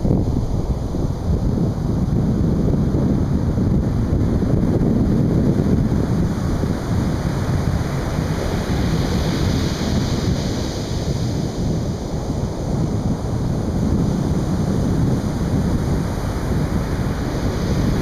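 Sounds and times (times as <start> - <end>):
surf breaking on a beach: 0.0 - 18.0
wind buffeting microphone: 0.0 - 18.0.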